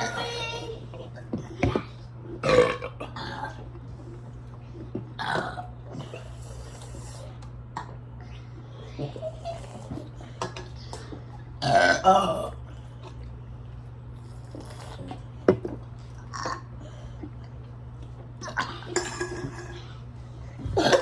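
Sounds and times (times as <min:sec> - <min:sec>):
voice: 0:00.0 - 0:02.0
steady low hum: 0:00.0 - 0:21.0.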